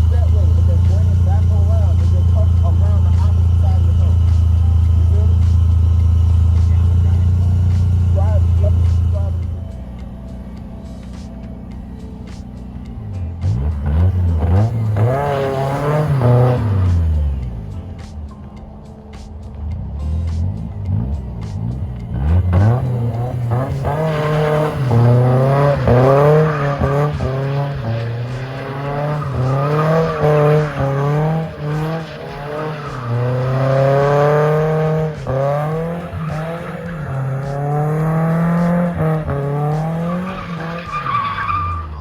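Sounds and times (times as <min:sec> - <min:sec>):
car engine at high revs: 0:00.0 - 0:42.0
tyres squealing: 0:10.6 - 0:17.8, 0:20.4 - 0:42.0.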